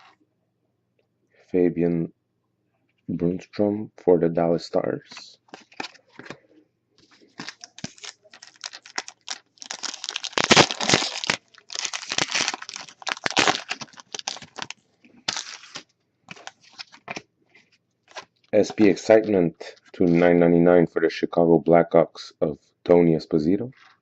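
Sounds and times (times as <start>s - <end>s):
card pack wrapper crinkling: 5.5s - 6.4s, 7.0s - 17.2s, 18.1s - 19.0s
cards being handled: 5.5s - 6.4s, 7.0s - 19.0s.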